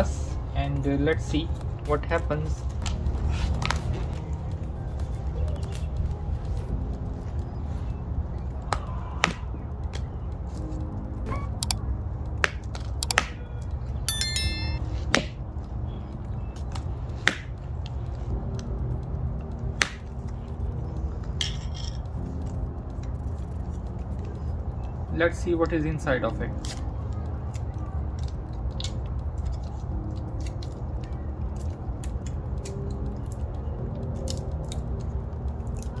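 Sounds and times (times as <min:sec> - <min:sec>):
short metallic ring: 0:14.1 - 0:14.8.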